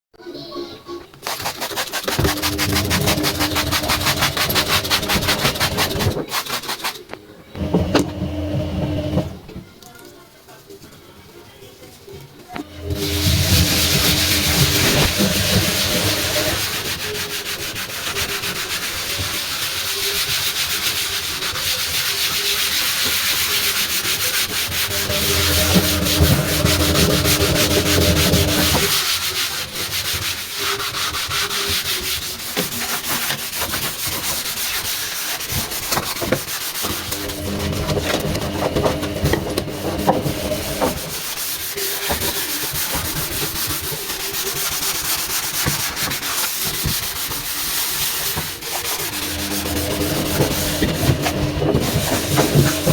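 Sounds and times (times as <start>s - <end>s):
sponge scrubbing surface: 1.2s - 7.0s, 7.6s - 9.4s, 12.6s - 52.9s.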